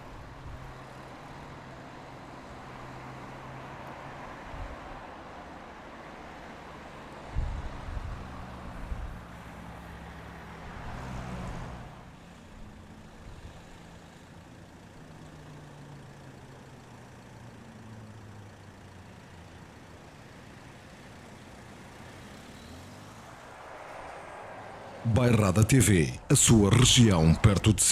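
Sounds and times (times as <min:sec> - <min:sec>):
traffic hum: 0:00.0 - 0:27.9
vehicle engine rumbling: 0:08.7 - 0:27.9
vehicle passing: 0:21.4 - 0:27.9.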